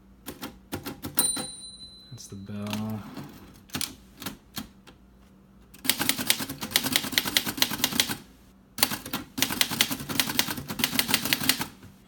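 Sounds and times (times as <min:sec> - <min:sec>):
typewriter keystrokes: 0:00.2 - 0:01.5, 0:05.8 - 0:08.2, 0:08.8 - 0:11.8.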